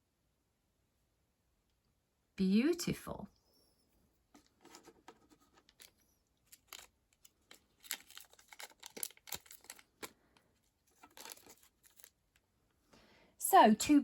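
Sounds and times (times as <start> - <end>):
packaging rustling: 4.4 - 12.2.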